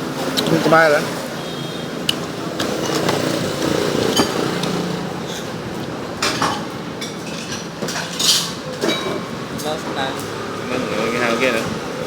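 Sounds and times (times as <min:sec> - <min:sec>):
dishes and utensils clattering: 0:02.2 - 0:10.0.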